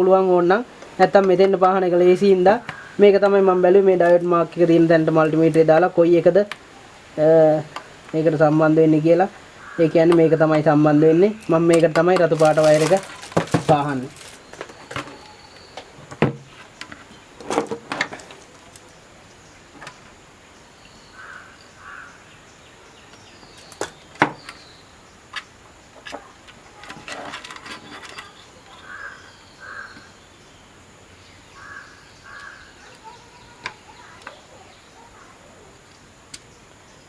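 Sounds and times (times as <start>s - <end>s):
crow cawing: 2.6s - 3.0s, 9.5s - 10.1s, 21.2s - 22.2s, 28.8s - 30.2s, 31.5s - 34.2s.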